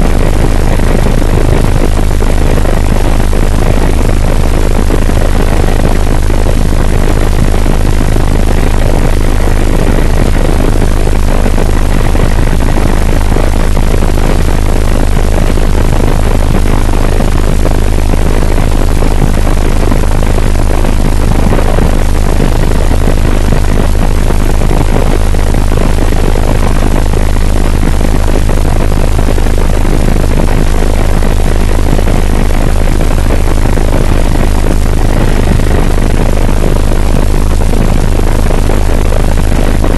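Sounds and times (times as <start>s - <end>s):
faint high whine: 0.0s - 39.9s
helicopter rotor and engine drone: 0.0s - 39.9s.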